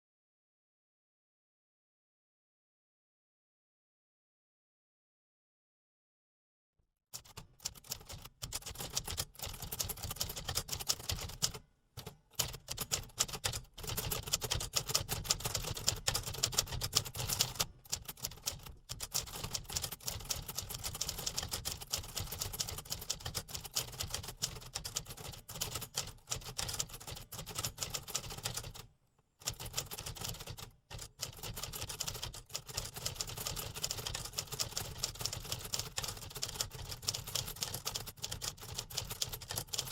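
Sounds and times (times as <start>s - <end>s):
typewriter keys clacking: 29.5s - 39.9s.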